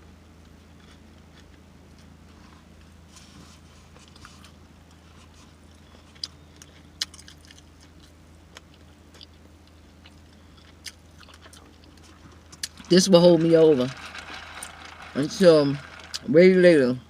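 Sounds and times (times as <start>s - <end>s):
steady low hum: 0.0s - 17.0s
chewing and lip-smacking: 4.0s - 12.9s.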